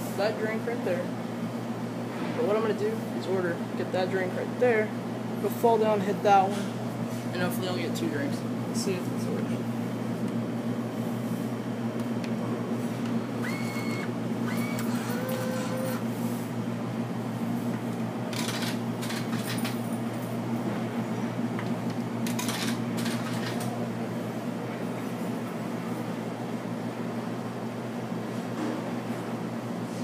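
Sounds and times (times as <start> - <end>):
vending machine humming: 0.0 - 30.0
vending mechanism rattling: 18.3 - 19.8, 22.2 - 23.7.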